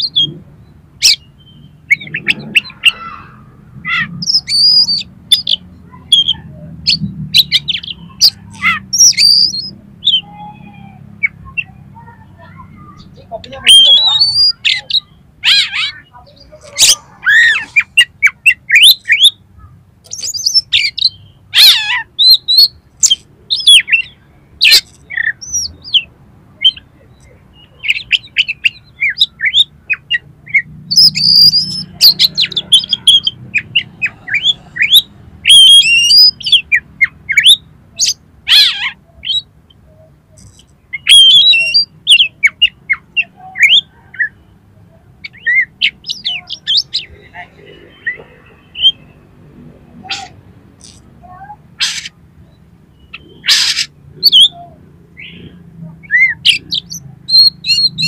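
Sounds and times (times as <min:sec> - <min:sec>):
bird singing whistles and chirps: 0:09.0 - 0:10.3, 0:41.0 - 0:42.8.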